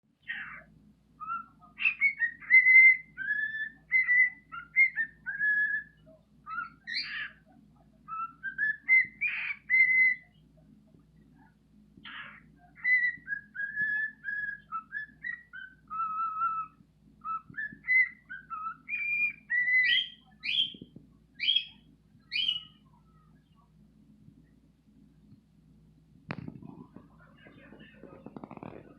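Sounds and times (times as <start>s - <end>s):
cockatiel whistling song: 1.2s - 7.4s, 8.1s - 10.4s, 12.0s - 22.8s.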